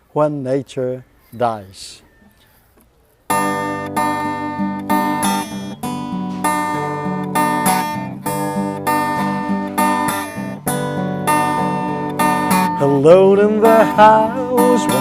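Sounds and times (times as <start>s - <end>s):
acoustic guitar strumming chords: 3.3s - 15.0s.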